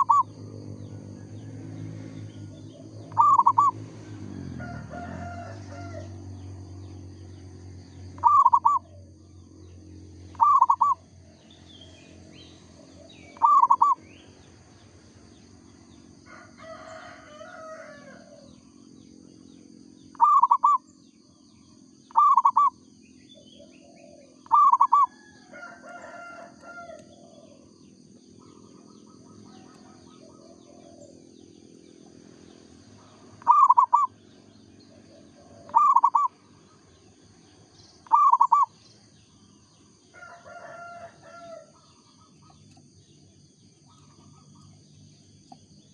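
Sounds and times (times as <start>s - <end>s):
dove cooing: 0.0s - 1.1s, 2.0s - 6.1s, 8.1s - 9.2s, 10.3s - 11.1s, 12.5s - 14.1s, 20.1s - 20.9s, 22.1s - 31.4s, 33.0s - 34.2s, 34.8s - 36.9s, 38.0s - 38.8s
small birds chirping: 0.0s - 45.9s.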